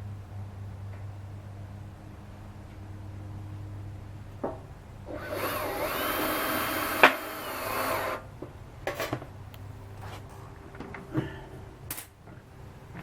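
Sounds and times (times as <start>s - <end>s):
power drill whining: 5.1s - 8.3s.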